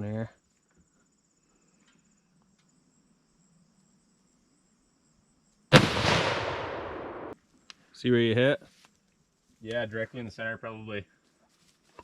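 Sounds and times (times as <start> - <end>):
rifle shot with echo: 5.7 - 7.4.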